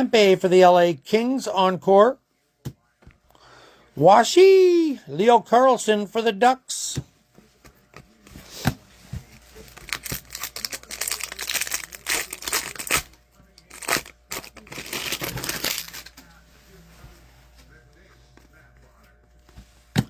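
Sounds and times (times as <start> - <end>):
wrapper rustling: 9.4 - 16.2
wrapper being torn and crinkled: 9.7 - 16.1.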